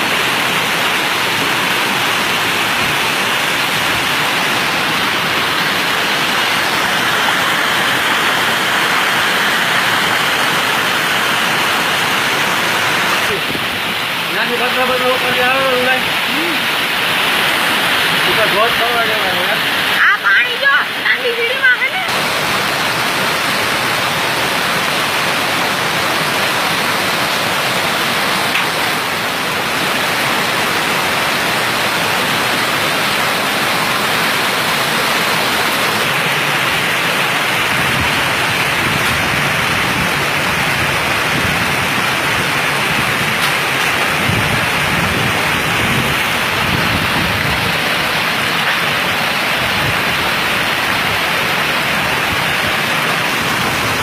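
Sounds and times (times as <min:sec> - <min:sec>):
heavy rain pouring: 0:00.0 - 0:54.0.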